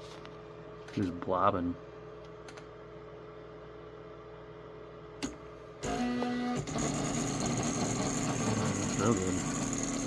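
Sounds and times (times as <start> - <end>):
printer humming: 5.2 - 10.0
stepper motors whining: 5.8 - 10.0.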